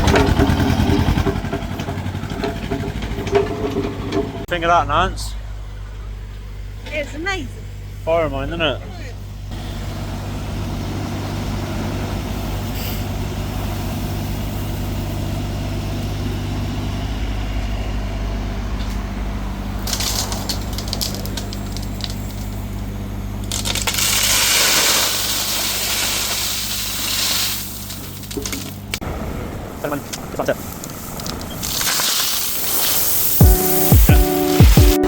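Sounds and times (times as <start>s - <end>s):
engine idling: 0.0s - 35.0s
crackling and crunching: 19.7s - 29.0s, 30.0s - 35.0s
loud rushing hiss: 29.2s - 35.0s.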